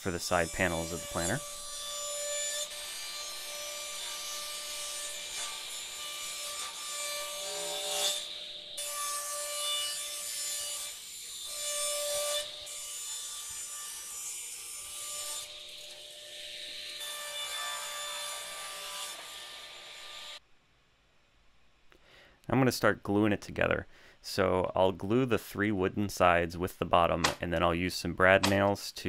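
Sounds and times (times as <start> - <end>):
saw blade cutting wood: 0.1 - 20.4.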